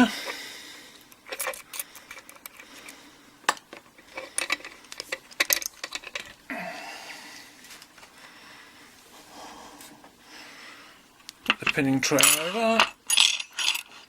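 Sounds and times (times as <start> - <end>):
metallic clicks of padlock and lock picks: 1.0 - 2.9, 3.5 - 6.4.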